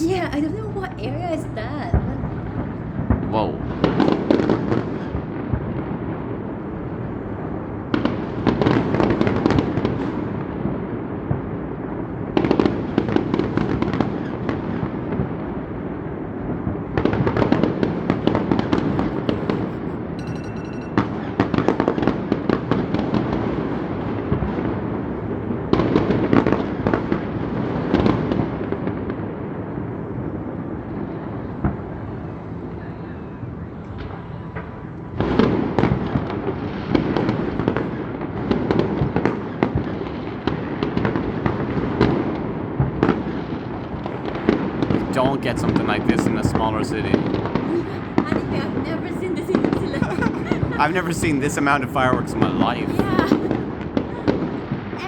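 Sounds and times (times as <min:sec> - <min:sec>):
fireworks crackling bursts: 0:00.0 - 0:05.7, 0:35.2 - 0:55.0
rumble of explosions: 0:34.0 - 0:48.8.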